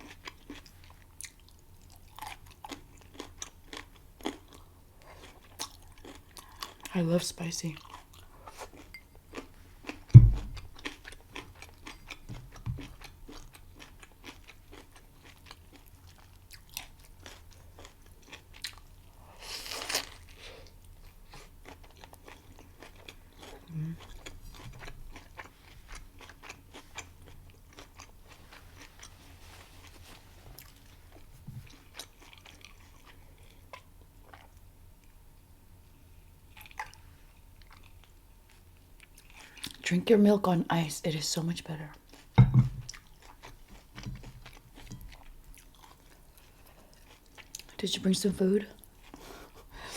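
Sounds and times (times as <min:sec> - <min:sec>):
food crunches: 0:00.0 - 0:04.6, 0:21.6 - 0:28.2
wet chewing and mouth clicks: 0:00.0 - 0:06.9, 0:07.7 - 0:19.1, 0:19.7 - 0:29.2, 0:29.8 - 0:35.2, 0:36.5 - 0:39.8, 0:42.0 - 0:47.8
sharp low thump: 0:10.1 - 0:10.7.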